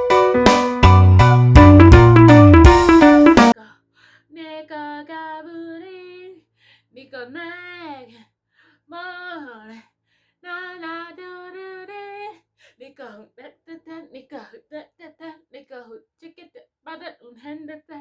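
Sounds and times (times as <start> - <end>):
girl singing unaccompanied: 4.3 - 6.4.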